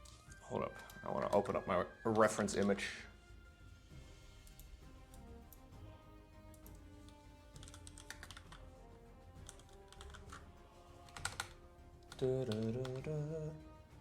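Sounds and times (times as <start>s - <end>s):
quiet background music: 0.0s - 14.0s
person speaking: 0.3s - 3.2s, 12.1s - 13.6s
computer keyboard typing: 6.5s - 8.7s, 9.4s - 10.5s, 11.1s - 13.3s.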